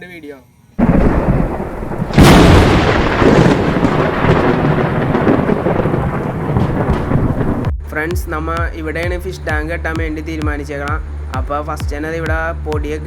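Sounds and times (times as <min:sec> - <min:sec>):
thunder rumbling: 0:00.8 - 0:11.5
thunder clap: 0:00.8 - 0:13.0.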